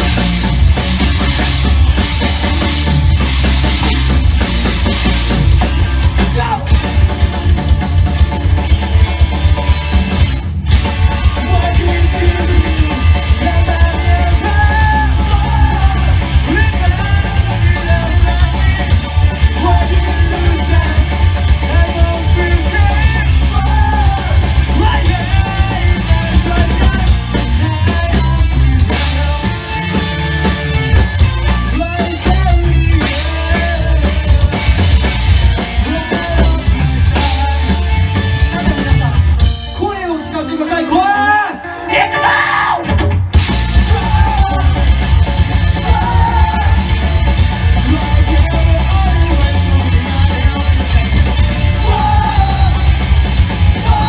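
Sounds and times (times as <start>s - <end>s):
vocals: 0.0s - 2.9s, 3.8s - 9.9s, 10.9s - 54.0s
rock band playing live: 0.0s - 54.0s.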